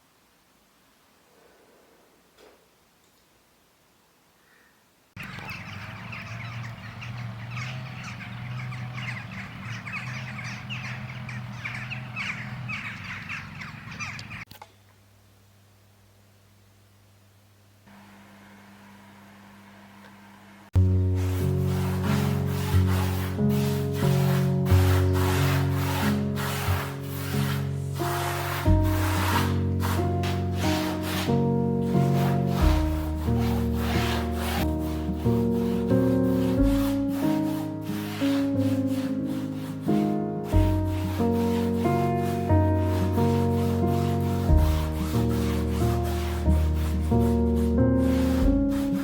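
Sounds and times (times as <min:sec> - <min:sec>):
many birds calling: 0:05.2 - 0:14.5
soft piano-like music: 0:20.8 - 0:49.0.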